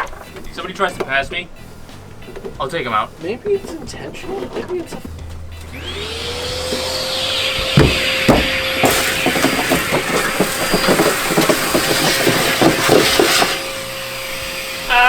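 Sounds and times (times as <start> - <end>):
debris rattling up hose: 0.0 - 15.0
vacuum cleaner whine: 4.3 - 15.0.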